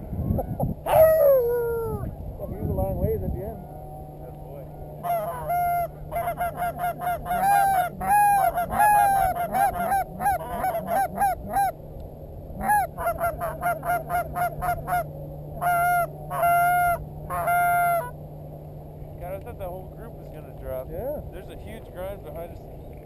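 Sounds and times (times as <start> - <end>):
geese honking and clucking: 3.4 - 11.8, 12.6 - 18.2.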